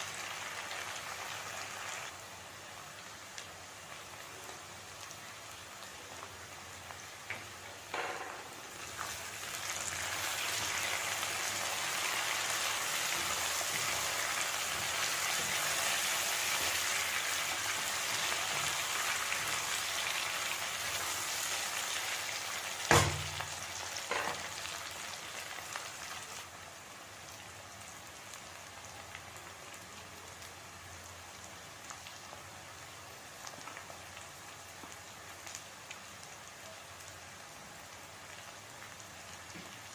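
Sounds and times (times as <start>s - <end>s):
food sizzling in hot oil: 0.0s - 39.9s
sharp knocks: 22.9s - 23.4s.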